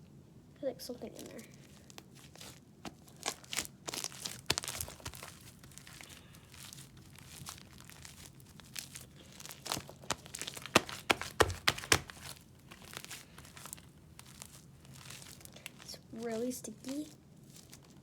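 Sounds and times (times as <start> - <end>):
slime squeezed by hand popping: 1.9 - 15.8.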